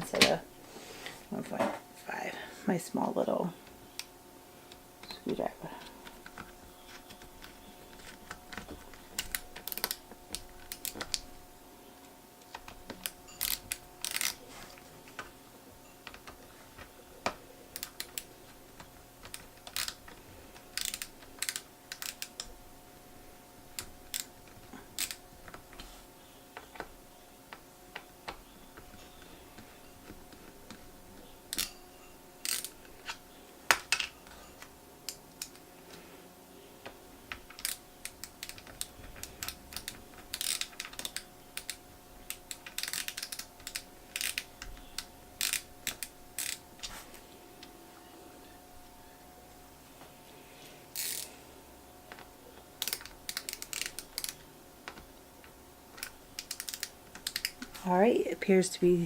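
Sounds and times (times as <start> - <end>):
faint steady hum: 0.0 - 59.0
screwdriver clicking on metal: 9.1 - 11.2, 12.6 - 14.4, 19.2 - 20.1, 20.7 - 22.5, 24.9 - 25.2, 32.4 - 33.2, 37.4 - 46.6, 52.8 - 54.4, 56.0 - 57.6.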